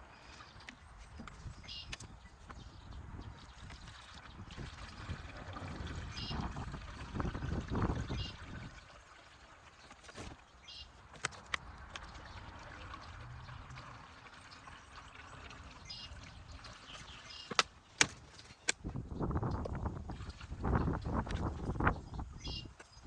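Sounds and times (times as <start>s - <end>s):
liquid trickling: 3.0s - 23.0s.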